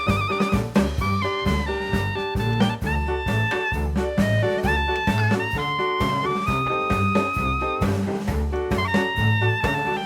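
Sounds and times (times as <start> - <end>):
upbeat jazzy instrumental music: 0.0 - 10.0.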